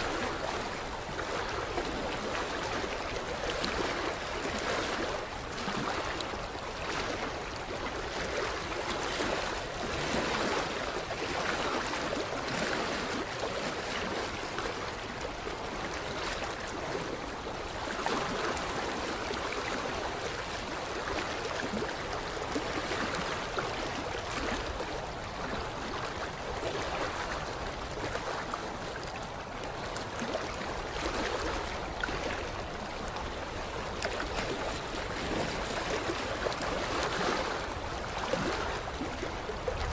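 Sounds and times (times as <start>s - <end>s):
small waves lapping on shore: 0.0s - 39.9s.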